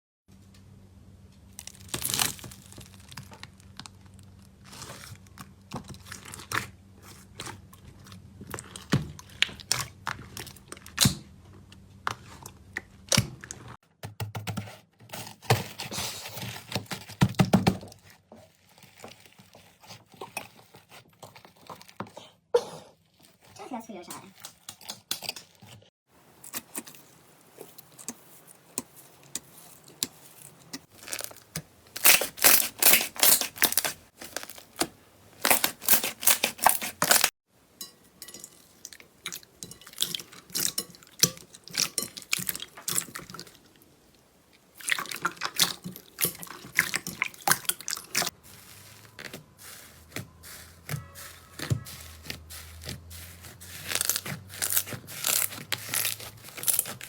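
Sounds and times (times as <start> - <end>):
slime squeezed by hand: 48.1 - 57.0.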